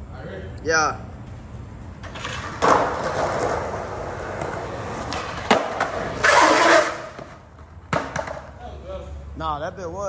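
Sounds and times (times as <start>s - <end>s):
skateboard rolling: 1.3s - 8.7s
skateboard trucks grinding metal: 2.0s - 8.5s
skateboard landing clack: 2.0s - 8.6s.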